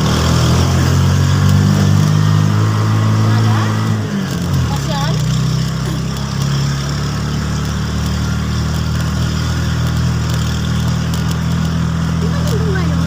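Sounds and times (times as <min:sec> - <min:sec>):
vehicle engine running steadily: 0:00.0 - 0:13.0.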